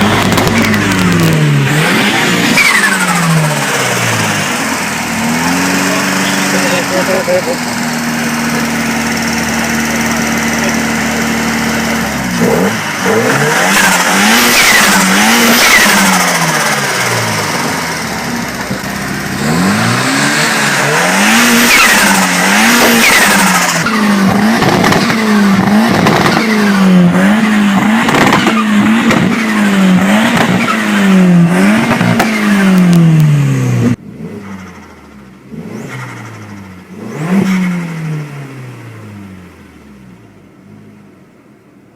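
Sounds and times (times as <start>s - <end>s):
turbocharged engine revving: 0.0s - 41.0s.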